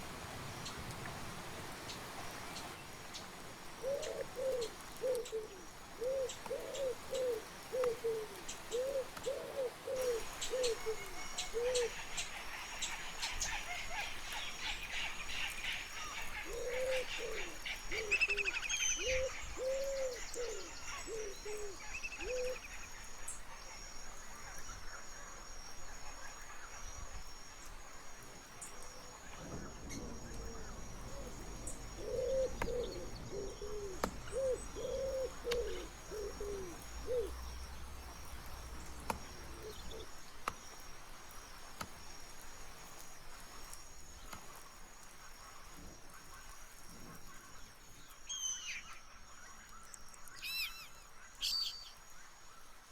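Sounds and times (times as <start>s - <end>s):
songbirds chirping and trilling: 1.7s - 52.9s
bird hooting low notes: 29.3s - 40.2s.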